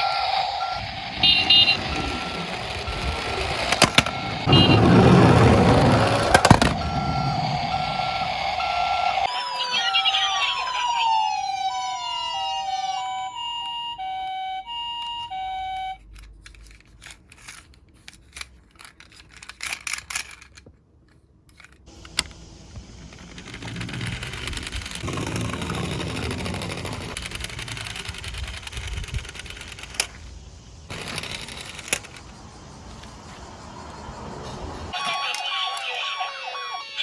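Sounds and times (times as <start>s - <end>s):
toy two-tone siren: 0.0s - 5.4s, 6.0s - 16.2s, 34.9s - 37.0s
toy car rolling on plastic: 0.0s - 9.2s, 16.4s - 20.7s, 21.5s - 30.2s, 30.9s - 32.3s
toy being handled clicks: 16.0s - 20.7s, 27.1s - 30.2s.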